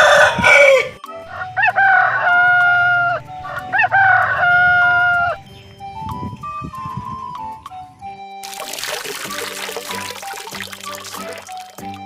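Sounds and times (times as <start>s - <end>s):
rooster crowing: 0.0s - 5.4s.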